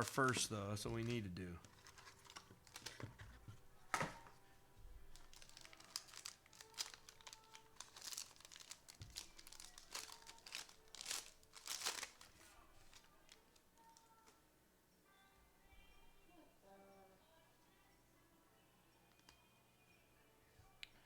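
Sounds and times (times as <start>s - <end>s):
foil wrapper crinkling: 0.0s - 3.4s, 5.0s - 14.3s.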